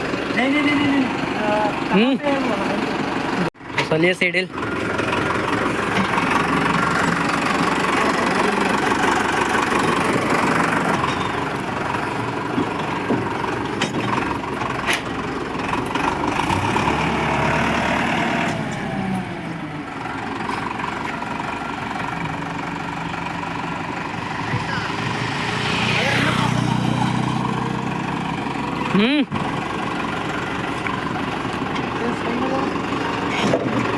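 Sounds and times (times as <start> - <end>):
engine running steadily: 0.0 - 33.9.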